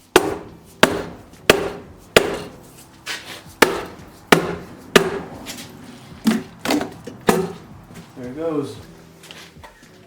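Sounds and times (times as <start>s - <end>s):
hammer knocking on metal: 0.2s - 2.6s, 3.6s - 5.5s, 6.2s - 7.7s.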